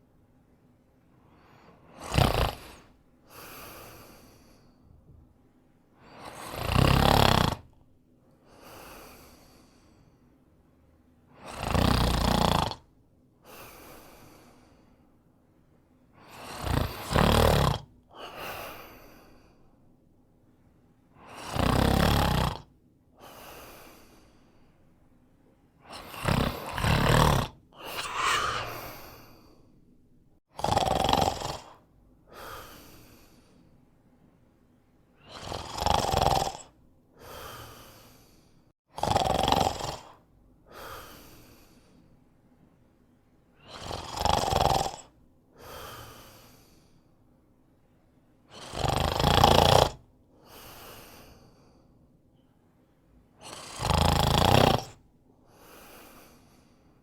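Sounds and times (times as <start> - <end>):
man snoring: 1.8 - 4.6, 6.1 - 7.8, 11.4 - 12.9, 16.2 - 17.9, 21.2 - 24.1, 25.8 - 29.5, 30.5 - 33.3, 35.2 - 38.4, 39.0 - 41.3, 43.6 - 46.8, 48.5 - 51.1, 53.4 - 55.0
soft short breath: 27.8 - 29.8.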